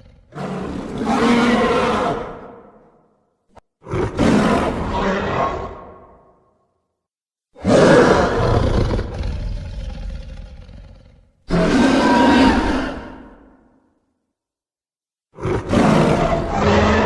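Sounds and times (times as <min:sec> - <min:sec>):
monster roar: 0:07.6 - 0:13.4, 0:15.4 - 0:17.0.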